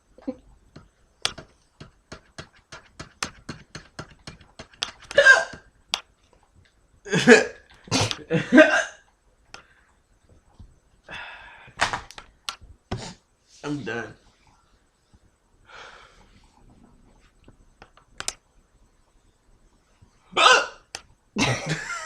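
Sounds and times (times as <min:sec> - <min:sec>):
person hiccuping: 0:05.1 - 0:05.6, 0:20.4 - 0:21.6.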